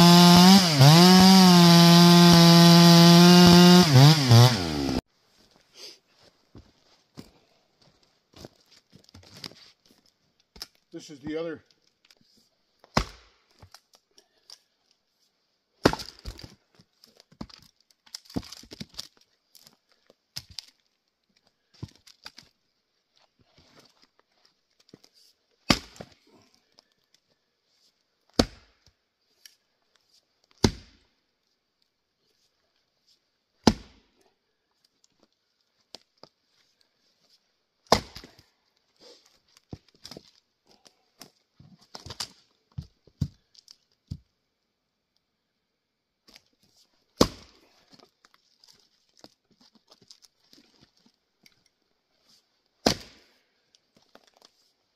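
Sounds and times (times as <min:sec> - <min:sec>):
axe chopping firewood: 0:00.0 - 0:05.0, 0:12.8 - 0:13.8, 0:15.8 - 0:16.5, 0:25.6 - 0:26.2, 0:28.3 - 0:28.8, 0:30.6 - 0:31.0, 0:33.6 - 0:34.1, 0:37.9 - 0:38.4, 0:47.2 - 0:47.6, 0:52.8 - 0:53.4
wood knocking and tearing: 0:17.2 - 0:19.7.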